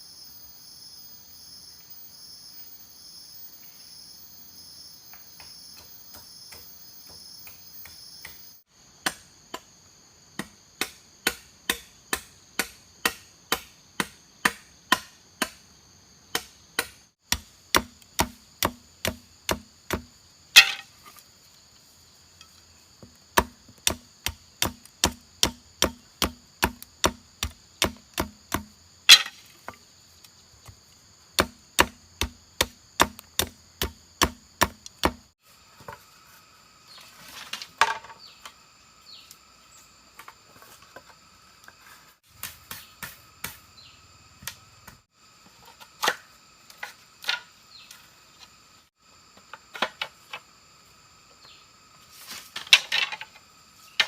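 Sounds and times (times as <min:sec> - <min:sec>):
insects buzzing: 0:00.0 - 0:54.0
blade chopping bamboo: 0:10.4 - 0:15.6, 0:16.3 - 0:20.9, 0:23.0 - 0:29.5, 0:31.4 - 0:35.3.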